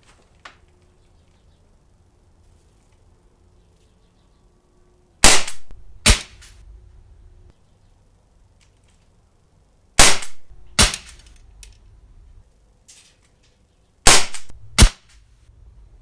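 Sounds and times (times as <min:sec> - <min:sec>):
airsoft pistol shots: 0:05.2 - 0:06.5, 0:10.0 - 0:11.2, 0:14.0 - 0:15.2.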